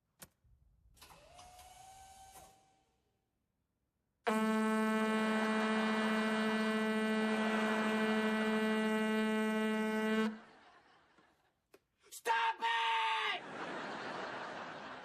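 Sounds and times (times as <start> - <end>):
loud steady buzzing tone: 4.3 - 10.5.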